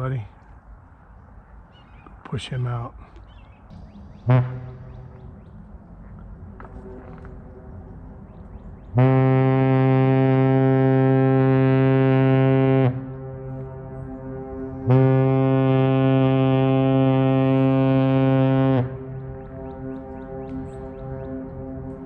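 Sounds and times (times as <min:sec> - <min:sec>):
ship foghorn blast: 0:04.2 - 0:05.4, 0:08.9 - 0:22.0.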